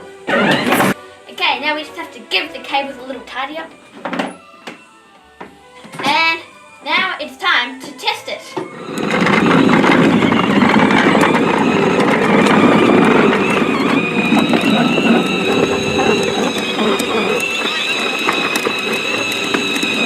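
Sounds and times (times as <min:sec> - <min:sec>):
high motor whine: 0:00.0 - 0:01.0, 0:08.7 - 0:20.0
electric motor gear rattle: 0:00.3 - 0:01.0, 0:08.6 - 0:20.0.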